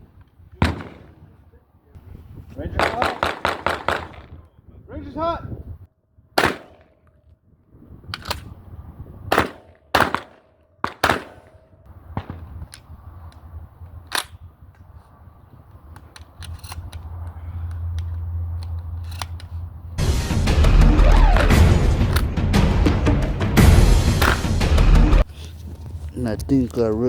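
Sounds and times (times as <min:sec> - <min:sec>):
gunshots: 0:00.6 - 0:01.4, 0:02.8 - 0:04.4, 0:06.4 - 0:07.0, 0:09.3 - 0:12.5, 0:20.0 - 0:25.2
low rumble: 0:19.9 - 0:25.3.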